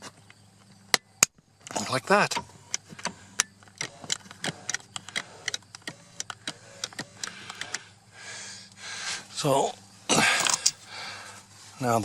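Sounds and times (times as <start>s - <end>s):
low electrical hum: 0.0s - 12.0s
clicks of small parts and tools: 2.7s - 7.8s, 10.3s - 10.9s.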